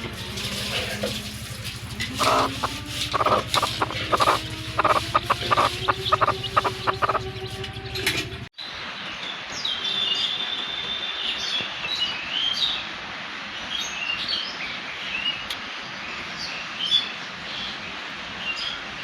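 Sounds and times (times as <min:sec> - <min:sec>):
birds chirping: 0:00.9 - 0:08.4
bird whistle: 0:02.2 - 0:07.2.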